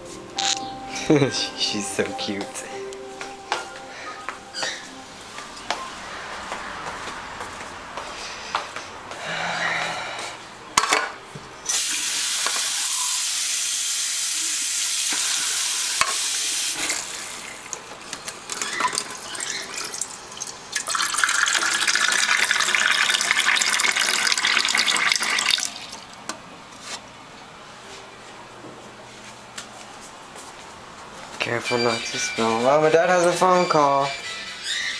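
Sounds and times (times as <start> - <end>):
tap water running: 11.7 - 26.2.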